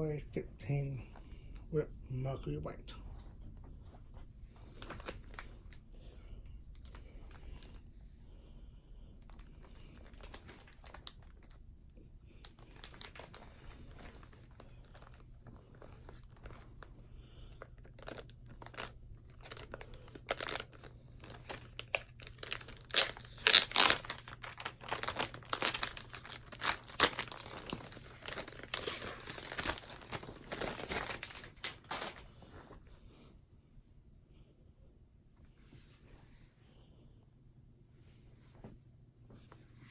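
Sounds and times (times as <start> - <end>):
packaging wrap crinkling and tearing: 4.7 - 5.8, 6.8 - 7.8, 9.3 - 11.6, 12.4 - 16.8, 17.6 - 32.5.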